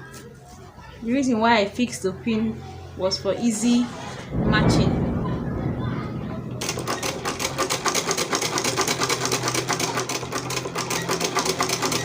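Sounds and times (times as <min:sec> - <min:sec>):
sewing machine clatter: 0:06.6 - 0:12.0
sewing machine motor hum: 0:06.9 - 0:12.0.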